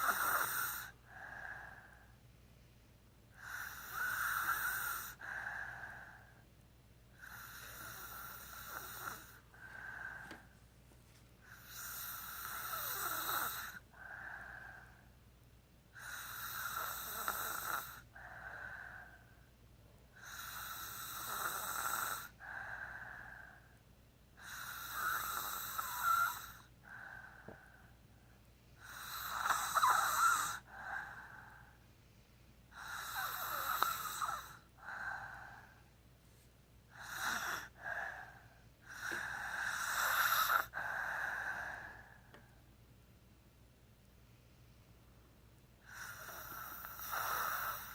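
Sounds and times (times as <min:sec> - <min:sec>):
person snoring: 0:00.0 - 0:02.0, 0:03.4 - 0:06.2, 0:07.2 - 0:10.4, 0:11.4 - 0:14.9, 0:16.0 - 0:19.2, 0:20.2 - 0:23.6, 0:24.4 - 0:27.6, 0:28.8 - 0:31.7, 0:32.7 - 0:35.8, 0:36.9 - 0:42.2, 0:45.8 - 0:47.9
soft breath: 0:00.0 - 0:04.5, 0:05.1 - 0:15.3, 0:18.0 - 0:21.2, 0:22.2 - 0:23.9, 0:24.7 - 0:39.8, 0:40.4 - 0:42.8.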